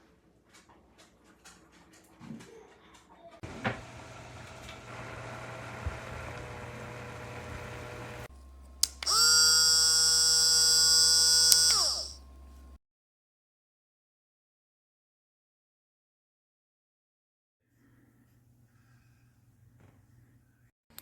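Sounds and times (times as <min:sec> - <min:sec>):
blender motor humming: 0:03.4 - 0:12.4
high motor whine: 0:03.9 - 0:12.8
switch click: 0:08.8 - 0:09.2.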